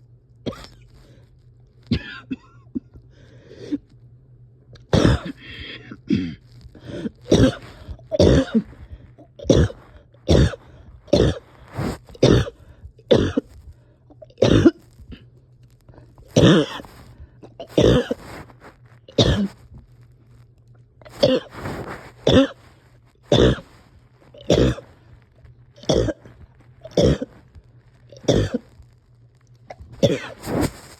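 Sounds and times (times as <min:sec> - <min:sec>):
person coughing: 0:00.5 - 0:00.8, 0:01.9 - 0:02.9, 0:04.9 - 0:13.5, 0:14.4 - 0:14.8, 0:16.3 - 0:18.4, 0:19.2 - 0:19.6, 0:21.1 - 0:22.6, 0:23.3 - 0:23.7, 0:24.4 - 0:24.9, 0:25.8 - 0:26.3, 0:26.9 - 0:27.3, 0:28.1 - 0:28.6, 0:29.7 - 0:30.7.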